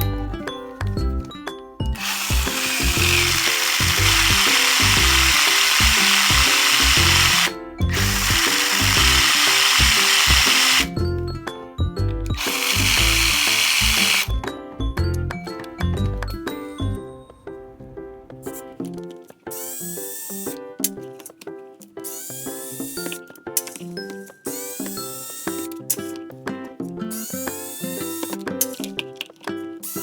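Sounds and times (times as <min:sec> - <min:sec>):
background music: 0:00.0 - 0:30.0
cordless power driver running: 0:02.0 - 0:11.0, 0:12.3 - 0:14.4.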